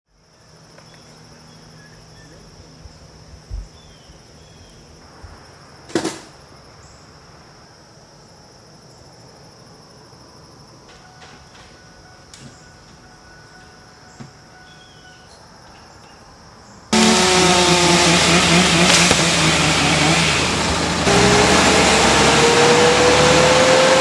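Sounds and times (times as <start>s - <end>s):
faint low hum: 0.2s - 16.8s
dull low thumps: 2.6s - 4.4s
sharp crack: 17.0s - 21.4s.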